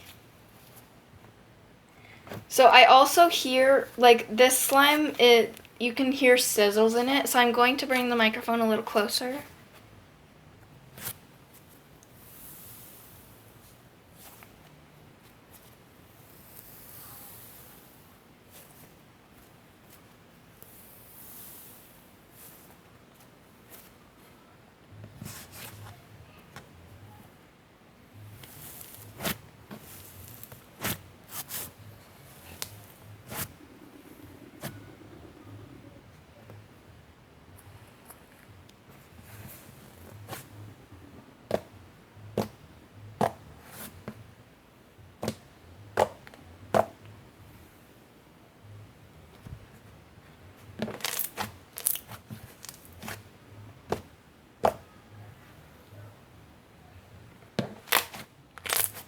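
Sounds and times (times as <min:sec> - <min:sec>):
slime squishing and crackling: 0:50.9 - 0:53.2, 0:57.8 - 0:59.0.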